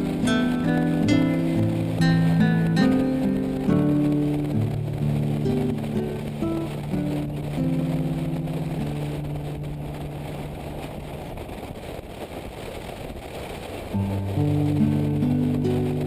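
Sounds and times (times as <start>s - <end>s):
background music: 0.0s - 9.3s
motorcycle engine and wind rush: 0.0s - 16.0s.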